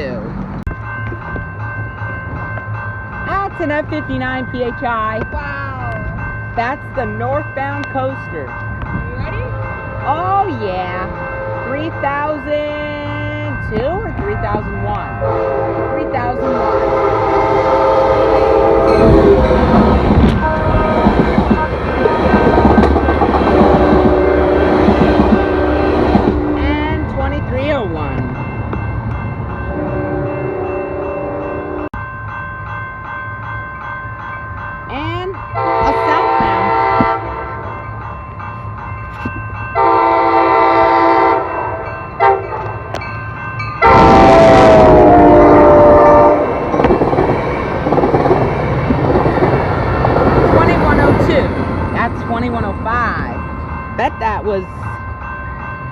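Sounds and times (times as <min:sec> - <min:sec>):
train rumble: 0:00.0 - 0:55.9
train horn chord: 0:15.2 - 0:27.3, 0:29.7 - 0:32.0, 0:35.6 - 0:37.7, 0:39.8 - 0:42.8, 0:43.8 - 0:46.7
wheels clacking over rail joints: 0:19.0 - 0:29.2, 0:46.6 - 0:52.9.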